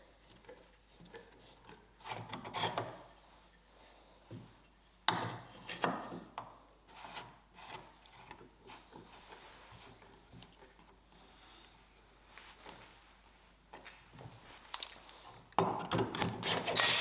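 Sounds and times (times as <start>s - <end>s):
hand tool scraping wood: 16.3s - 17.0s.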